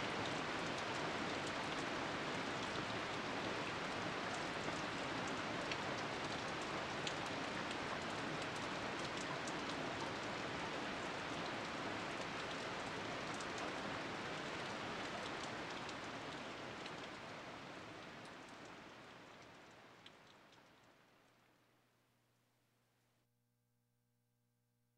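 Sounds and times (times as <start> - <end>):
fine patter-like ticks: 19.3 - 21.4.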